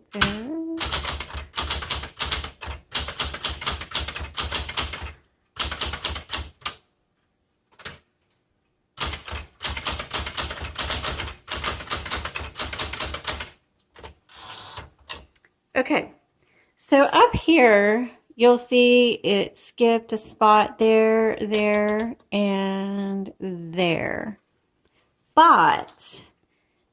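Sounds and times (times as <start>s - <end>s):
manual typewriter typing: 0.1s - 6.8s, 7.7s - 8.0s, 9.0s - 15.3s, 21.4s - 22.2s.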